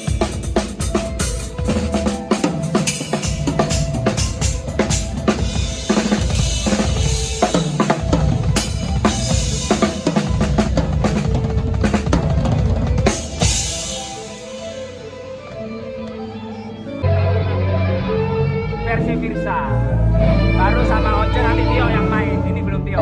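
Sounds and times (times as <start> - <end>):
drum kit playing: 0.0 - 15.7.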